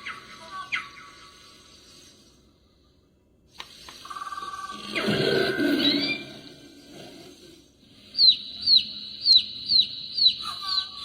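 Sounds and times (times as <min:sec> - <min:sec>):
high bird-call alarm chirps: 0:04.0 - 0:06.6, 0:07.9 - 0:11.0.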